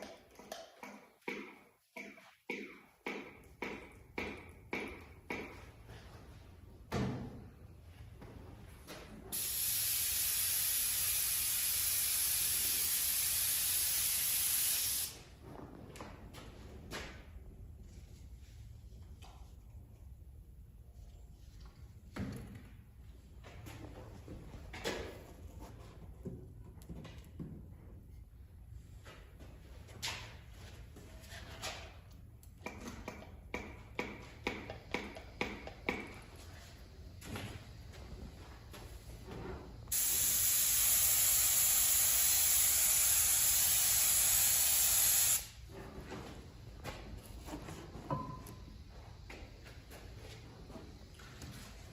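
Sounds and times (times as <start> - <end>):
airbrush spraying hiss: 9.3 - 15.2, 39.9 - 45.6.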